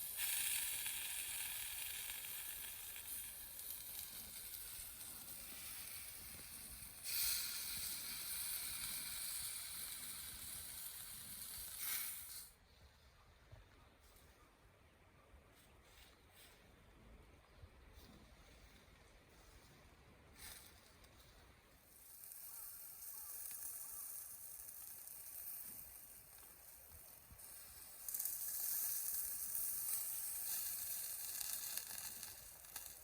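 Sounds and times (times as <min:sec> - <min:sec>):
food frying sizzle: 0:00.0 - 0:12.5, 0:22.1 - 0:33.0.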